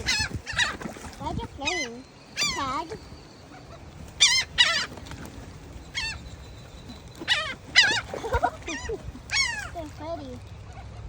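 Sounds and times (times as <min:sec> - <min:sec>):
seagulls crying: 0:00.0 - 0:11.0.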